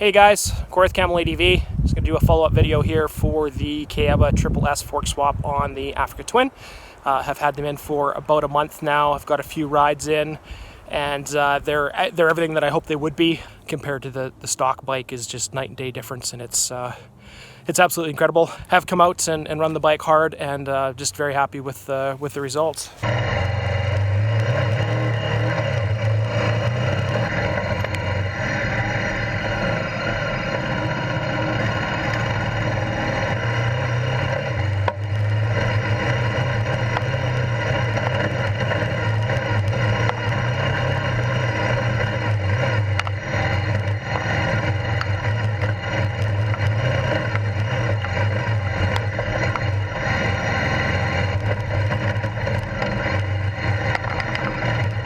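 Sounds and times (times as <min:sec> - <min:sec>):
motorcycle engine running: 0:00.0 - 0:06.2, 0:23.0 - 0:55.0
tyre and wind noise: 0:00.0 - 0:16.2, 0:22.5 - 0:55.0.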